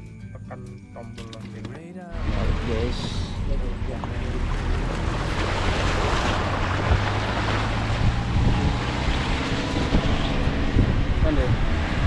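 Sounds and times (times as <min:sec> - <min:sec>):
low engine drone: 0:01.4 - 0:12.0
wind buffeting microphone: 0:04.1 - 0:12.0.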